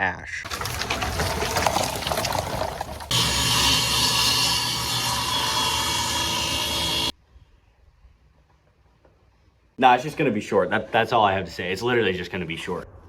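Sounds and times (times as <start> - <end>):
power tool running: 3.1 - 7.1.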